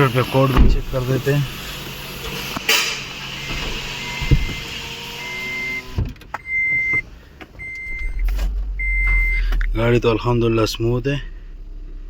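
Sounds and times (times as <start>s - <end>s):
car running noise: 0.0s - 12.0s
short electronic beeps: 5.3s - 7.0s, 7.6s - 9.5s.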